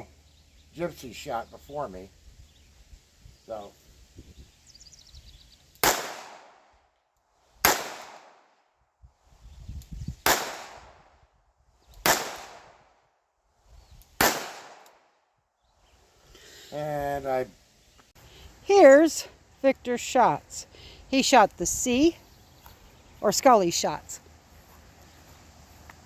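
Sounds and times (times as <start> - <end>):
revolver shots with echo: 5.8 - 6.5, 14.2 - 14.8.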